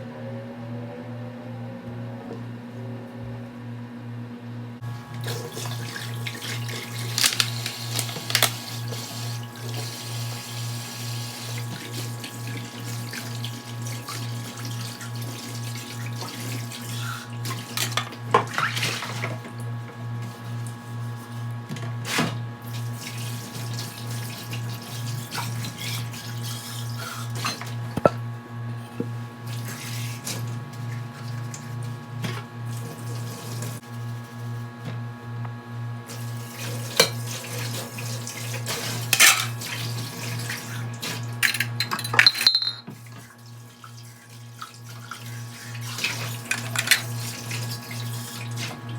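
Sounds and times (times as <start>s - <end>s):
tap water running into sink: 5.1s - 19.6s
dishes clinking: 41.8s - 43.0s.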